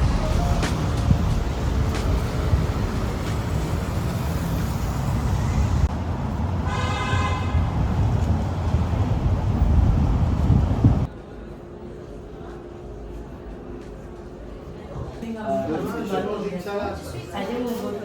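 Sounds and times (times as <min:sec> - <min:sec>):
road traffic rumble: 0:00.0 - 0:11.1
car horn: 0:06.6 - 0:07.8.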